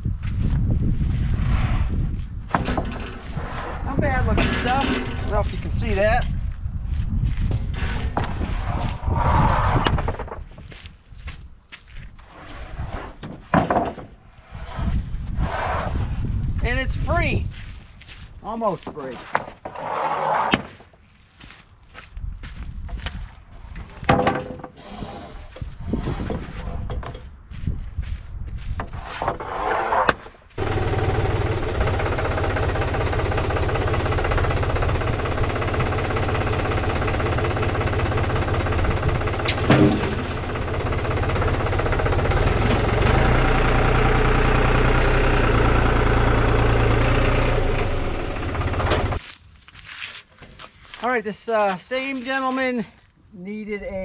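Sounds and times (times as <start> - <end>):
bandsaw mill running: 2.5 - 6.0, 30.6 - 49.2
knocks and handling noises: 13.1 - 14.2, 23.0 - 24.8.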